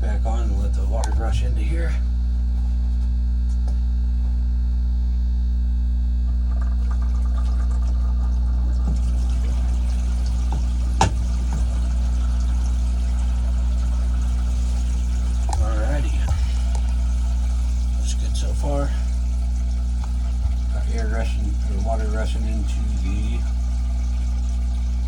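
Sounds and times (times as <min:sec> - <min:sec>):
steady low hum: 0:00.0 - 0:25.0
water rushing through pipes: 0:06.3 - 0:25.0.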